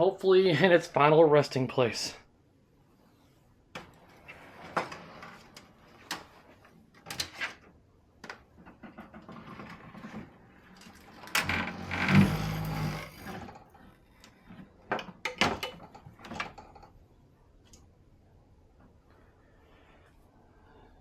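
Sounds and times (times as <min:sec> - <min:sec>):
pinball playfield scraping slide: 0:11.5 - 0:13.5.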